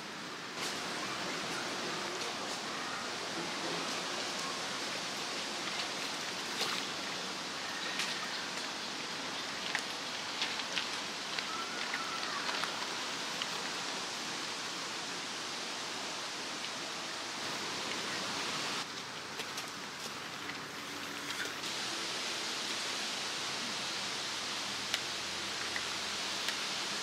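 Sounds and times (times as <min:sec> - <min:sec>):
river water rushing: 0:00.0 - 0:27.0
small ticks and splashes: 0:05.2 - 0:13.8.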